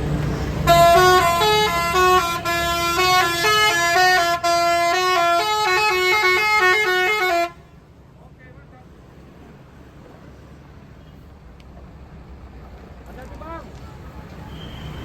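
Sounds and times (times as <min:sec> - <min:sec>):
tuned air horns playing melody: 0:00.6 - 0:07.6.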